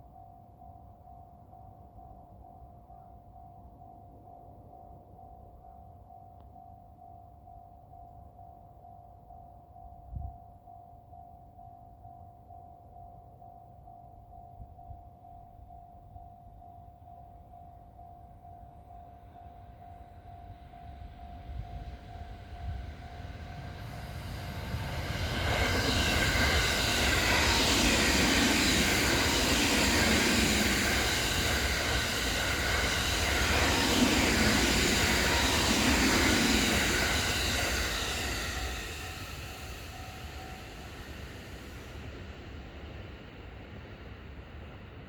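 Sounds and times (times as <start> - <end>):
level crossing warning bell: 0.0 - 41.8
train passing with rail noise: 0.0 - 45.0.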